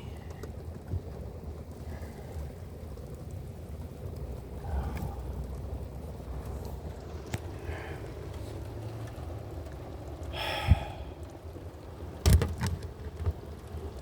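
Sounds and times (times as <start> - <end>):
heavy rain: 0.0 - 14.0
thump: 12.2 - 12.7.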